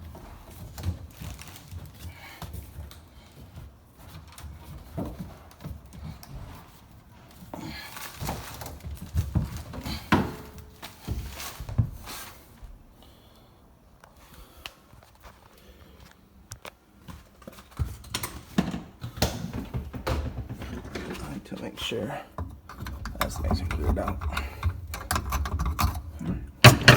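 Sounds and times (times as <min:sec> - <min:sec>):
knocks and clunks of plumbing work: 0:17.7 - 0:26.9.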